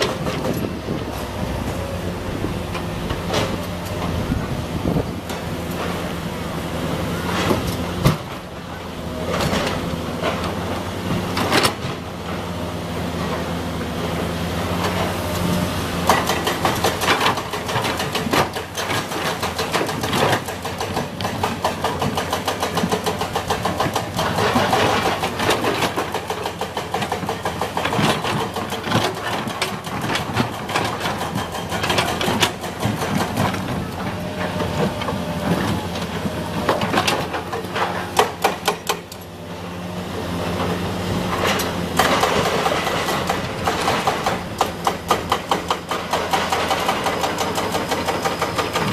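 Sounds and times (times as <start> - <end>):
excavator diesel engine running: 0.0 - 48.9
clanks and rattles: 16.1 - 39.3, 41.3 - 48.9.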